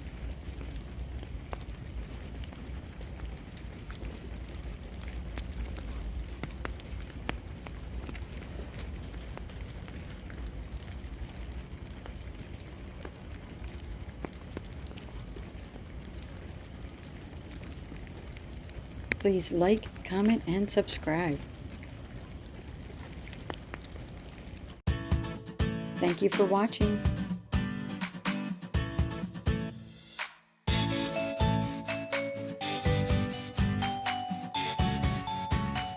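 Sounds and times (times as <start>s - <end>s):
meltwater dripping: 0.0s - 24.8s
music with steady beat: 24.9s - 35.9s.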